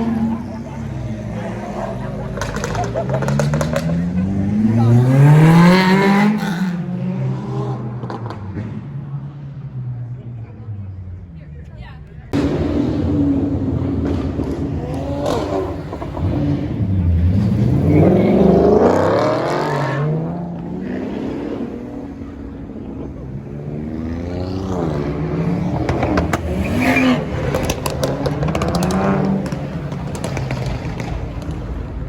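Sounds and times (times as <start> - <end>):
car engine revving: 0.0 - 32.0
exhaust crackles and pops: 1.9 - 4.2, 11.6 - 17.8, 25.7 - 32.0.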